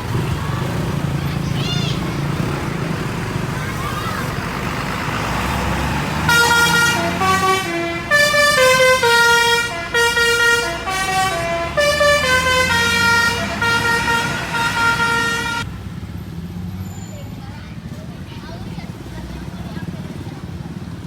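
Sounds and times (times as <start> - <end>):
bus engine running: 0.0 - 21.0
multi-tone musical air horn: 6.3 - 15.7.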